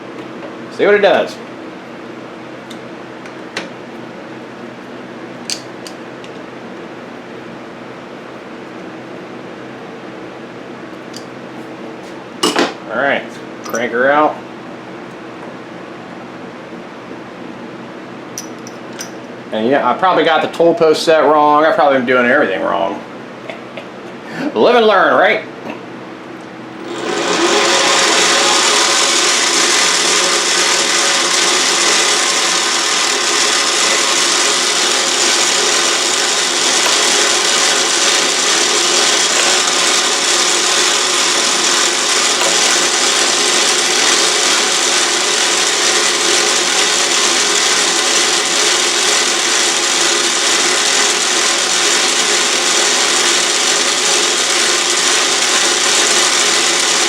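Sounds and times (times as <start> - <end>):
motor and gear whine: 26.6 - 57.0
lathe whirring: 26.7 - 57.0.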